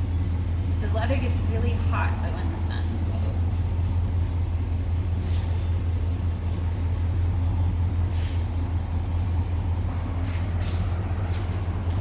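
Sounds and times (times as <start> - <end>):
steady low motor hum: 0.0 - 12.0
brief hissing: 8.1 - 8.4.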